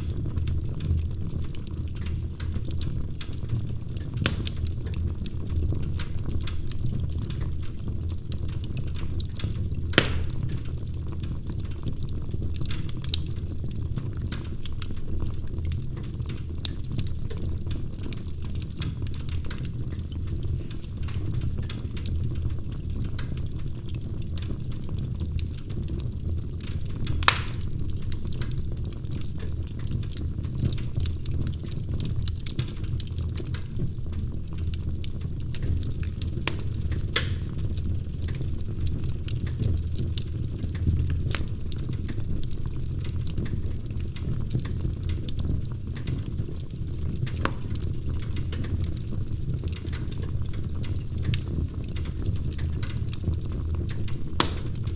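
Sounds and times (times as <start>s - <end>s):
low rumble of fire: 0.0s - 54.9s
wood fire crackling: 0.0s - 54.9s
sharp pops of fire: 3.5s - 5.1s, 9.2s - 11.0s, 26.7s - 28.5s, 35.5s - 38.4s, 47.2s - 49.0s, 53.9s - 54.9s.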